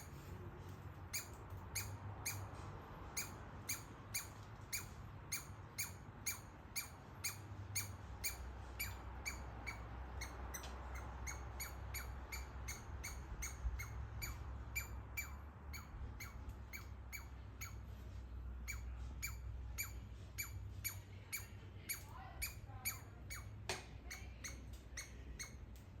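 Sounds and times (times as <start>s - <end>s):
baby squirrel chirping: 1.1s - 18.0s, 18.6s - 25.8s
lower sliding squirrel calls: 1.1s - 18.0s, 18.6s - 25.6s.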